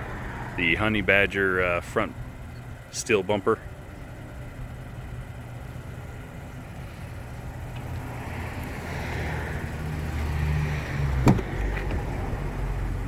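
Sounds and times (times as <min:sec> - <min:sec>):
car passing by: 0:08.1 - 0:13.0.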